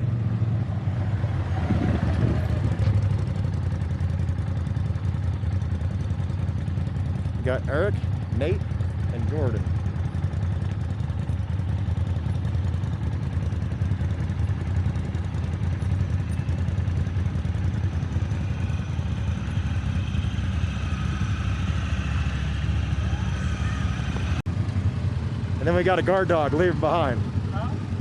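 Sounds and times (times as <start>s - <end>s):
utility vehicle engine rumbling: 0.0s - 28.0s.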